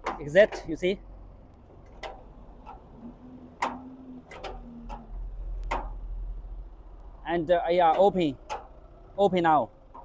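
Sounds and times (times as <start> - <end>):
metallic clicks and taps: 3.6 - 6.0.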